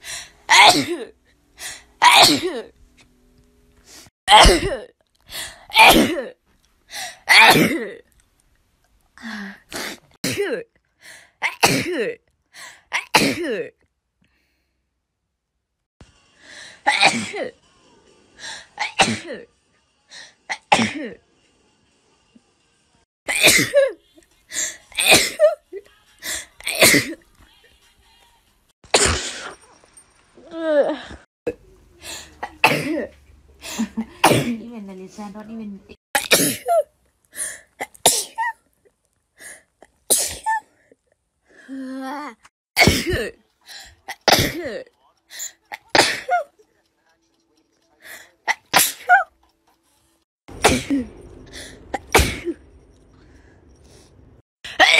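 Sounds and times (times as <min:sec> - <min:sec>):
person sneezing: 0:09.7 - 0:10.4, 0:28.9 - 0:29.6, 0:48.5 - 0:49.2.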